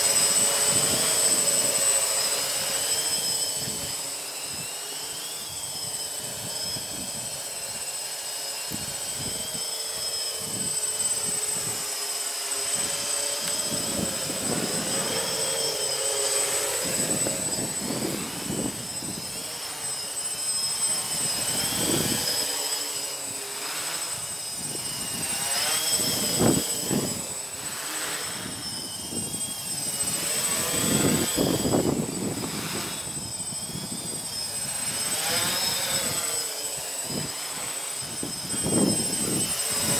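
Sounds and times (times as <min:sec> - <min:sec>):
drone propeller whine: 0:00.0 - 0:39.9
wind buffeting microphone: 0:12.8 - 0:15.4, 0:16.6 - 0:19.5, 0:28.4 - 0:36.2.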